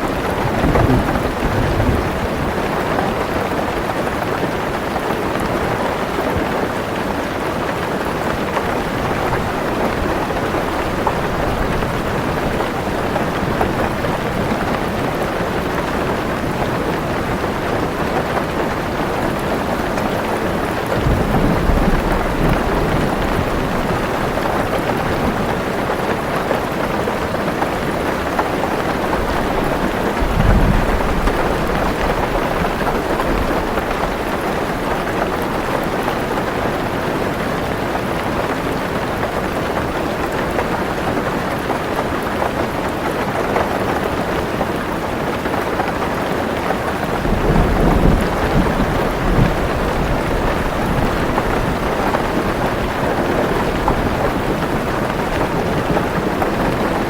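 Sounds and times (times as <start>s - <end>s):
thunder rumble: 0.0s - 4.2s, 8.7s - 19.9s, 20.9s - 25.8s, 28.7s - 36.9s, 47.1s - 57.0s
heavy rain on a car roof: 0.0s - 57.0s.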